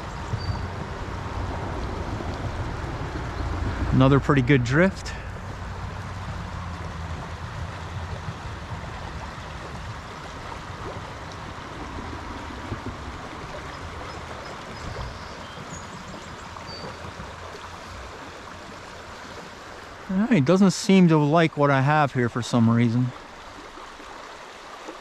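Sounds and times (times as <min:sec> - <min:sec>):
stream water rushing and gurgling: 0:00.0 - 0:25.0.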